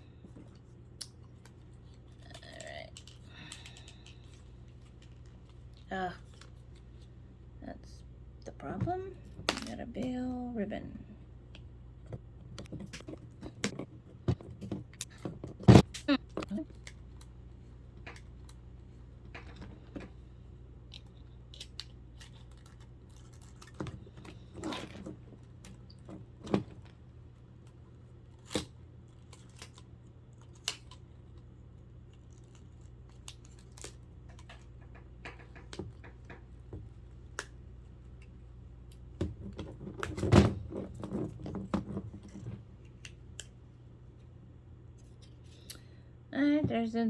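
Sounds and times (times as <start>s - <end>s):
steady low hum: 0.0s - 47.0s
plastic parts clicking and scraping: 1.3s - 5.6s.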